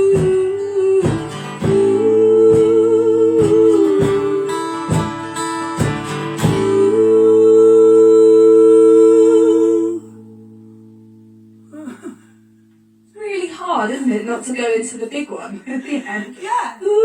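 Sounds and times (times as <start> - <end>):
acoustic guitar strumming: 0.0 - 13.1.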